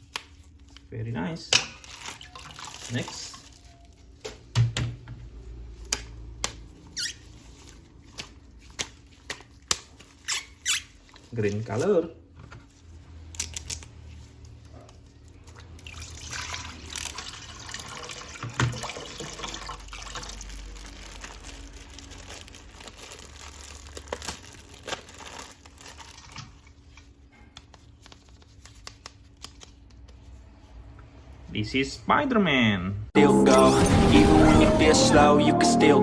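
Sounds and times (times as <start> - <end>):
plastic crinkling: 0.0 - 4.5, 5.3 - 30.5
water splashing and trickling: 1.9 - 3.5, 15.5 - 21.8.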